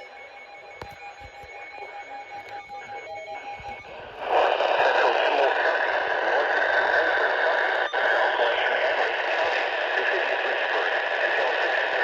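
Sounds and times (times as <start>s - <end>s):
radio static hiss: 3.6s - 12.0s.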